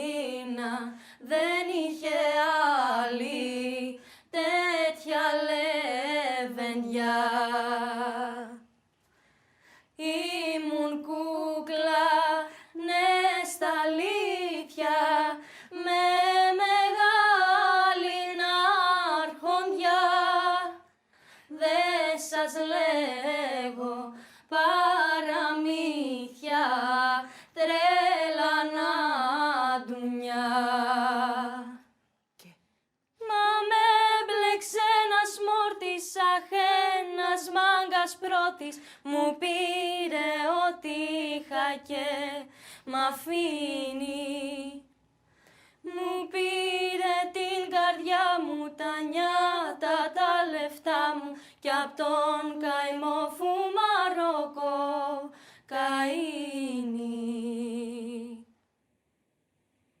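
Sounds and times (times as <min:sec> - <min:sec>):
woman singing unaccompanied: 0:10.0 - 0:20.8, 0:21.5 - 0:31.8, 0:33.2 - 0:44.8, 0:45.9 - 0:58.4.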